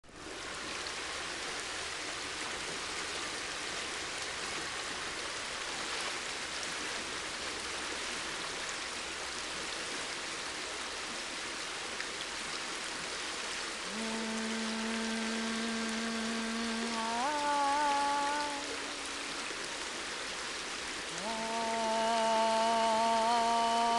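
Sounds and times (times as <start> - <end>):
river water flowing: 0.0 - 23.9
person singing long note: 13.8 - 20.0, 21.0 - 23.9.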